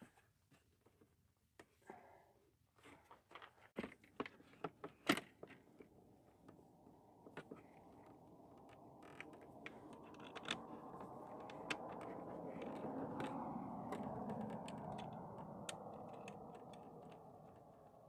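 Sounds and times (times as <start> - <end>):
steady low rush: 6.7 - 18.0.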